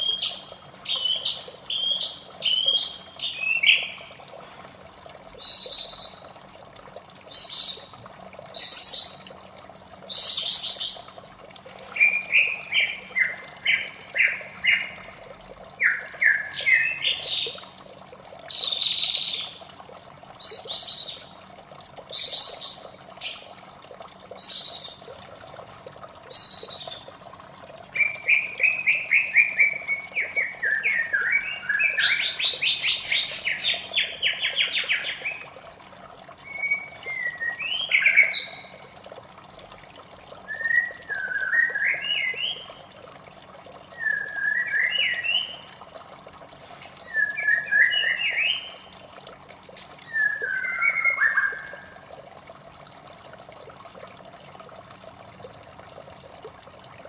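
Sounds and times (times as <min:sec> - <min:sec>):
bird singing warbling phrases: 0:00.0 - 0:04.2, 0:05.4 - 0:06.4, 0:07.2 - 0:09.3, 0:10.0 - 0:11.1, 0:11.8 - 0:15.2, 0:15.8 - 0:17.7, 0:18.5 - 0:19.7, 0:20.4 - 0:21.3, 0:22.1 - 0:23.5, 0:24.3 - 0:25.2, 0:26.2 - 0:27.2, 0:27.9 - 0:35.6, 0:36.4 - 0:38.8, 0:40.4 - 0:42.9, 0:43.9 - 0:45.8, 0:46.7 - 0:48.9, 0:50.0 - 0:52.0
running water rushing: 0:00.0 - 0:57.0.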